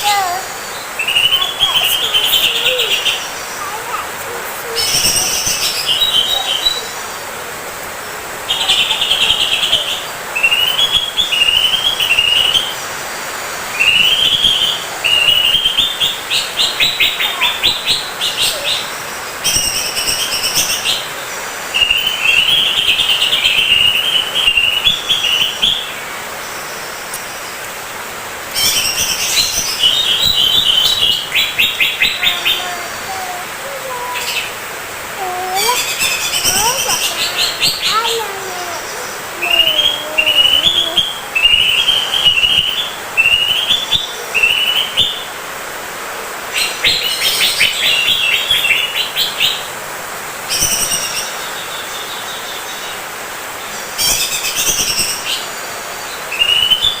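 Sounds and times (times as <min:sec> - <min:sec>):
bird singing with rattling trills: 0:35.6 - 0:45.3.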